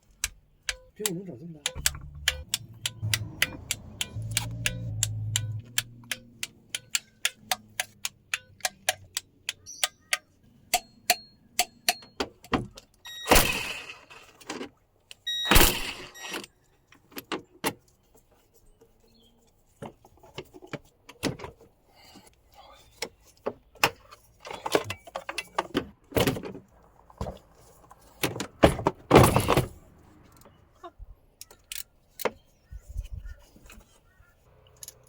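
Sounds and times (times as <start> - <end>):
sharp metallic clicks: 0.0 - 17.3.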